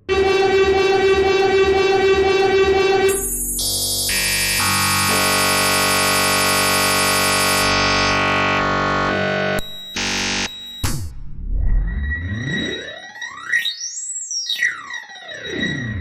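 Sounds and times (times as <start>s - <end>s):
dense synthesizer music: 0.0s - 6.6s.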